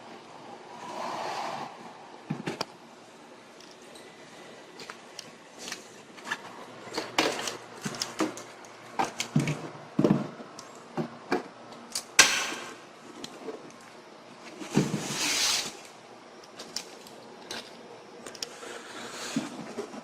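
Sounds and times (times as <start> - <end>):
loud scrape: 0.7 - 2.0.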